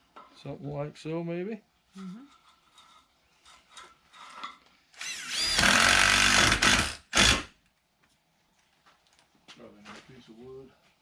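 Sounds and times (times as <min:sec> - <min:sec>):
power drill running: 0:05.0 - 0:07.5.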